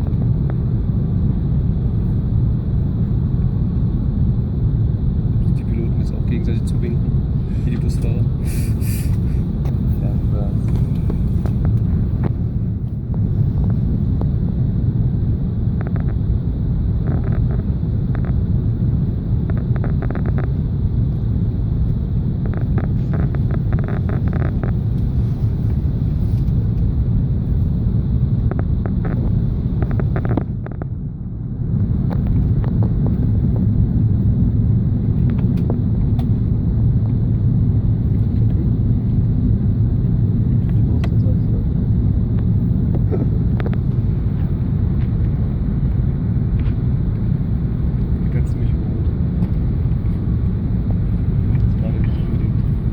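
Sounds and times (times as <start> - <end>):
aircraft cabin rumble: 0.0 - 52.9
airy hiss: 8.4 - 9.5.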